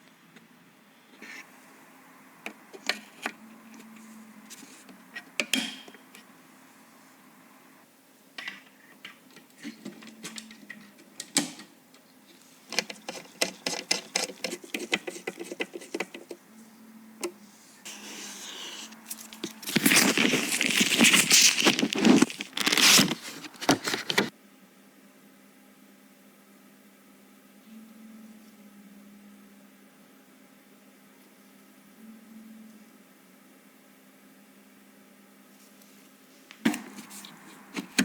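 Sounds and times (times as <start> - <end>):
computer parts clicking and tapping: 12.7 - 16.4
loud rustling and crackling: 19.3 - 24.3.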